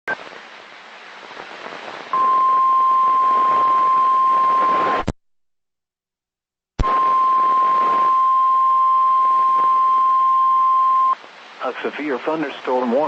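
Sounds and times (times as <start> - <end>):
radio static: 6.8 - 8.5, 11.1 - 13.0.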